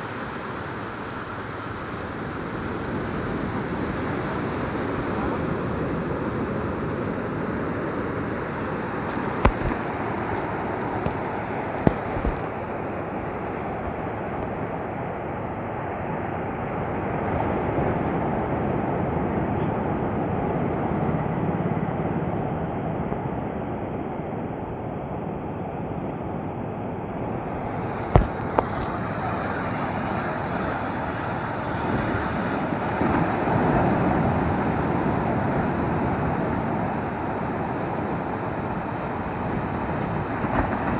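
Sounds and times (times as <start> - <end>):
sea surf washing on beach: 0.0 - 24.2, 24.9 - 40.9.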